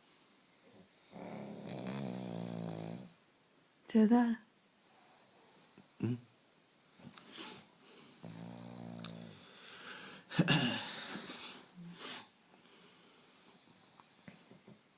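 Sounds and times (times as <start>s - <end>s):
dog snoring loudly: 0.6s - 3.2s, 8.2s - 9.4s.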